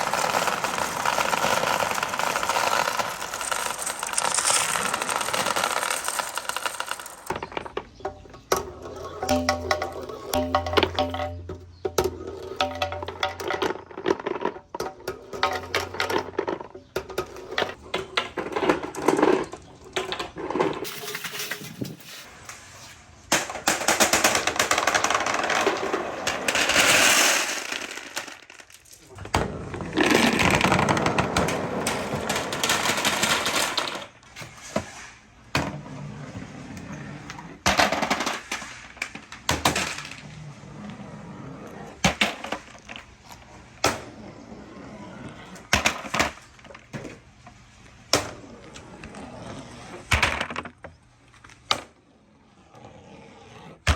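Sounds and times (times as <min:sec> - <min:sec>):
marbles clattering down a marble run: 0:00.0 - 0:07.8, 0:23.7 - 0:34.1.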